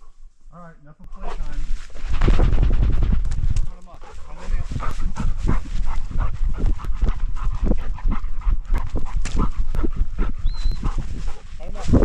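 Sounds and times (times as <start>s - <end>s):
dog panting rapidly: 2.1s - 12.0s.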